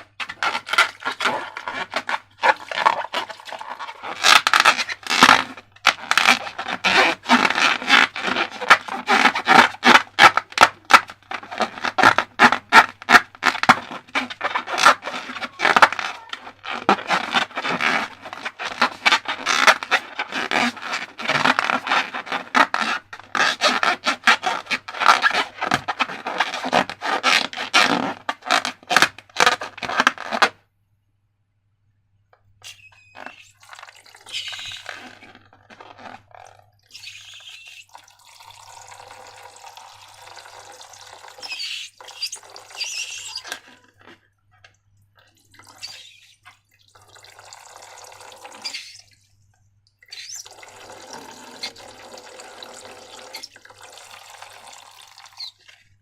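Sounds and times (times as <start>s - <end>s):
slime stirred and squished: 0.0s - 30.5s, 32.6s - 56.0s
wet pouring and dripping: 33.2s - 35.0s, 36.4s - 56.0s.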